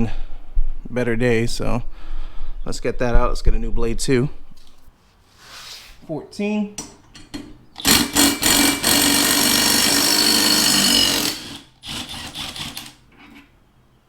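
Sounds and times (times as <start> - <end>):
impact wrench hammering: 7.8 - 13.0.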